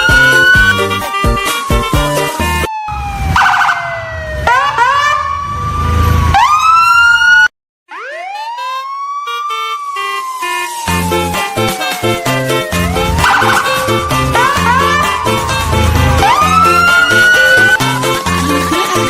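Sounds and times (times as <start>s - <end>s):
background music: 0.0s - 2.7s, 10.5s - 19.0s
siren wailing: 0.0s - 19.0s.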